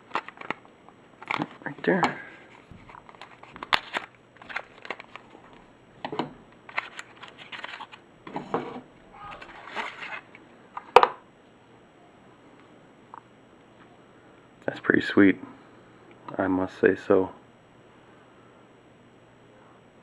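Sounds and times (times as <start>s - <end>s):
packaging rustling and crinkling: 0.0s - 5.8s, 6.7s - 8.0s, 9.2s - 10.4s.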